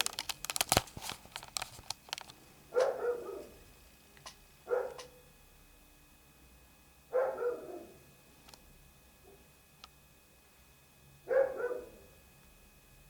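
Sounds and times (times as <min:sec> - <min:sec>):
dog barking: 0:02.7 - 0:03.6, 0:04.6 - 0:05.2, 0:07.1 - 0:08.0, 0:11.3 - 0:12.1.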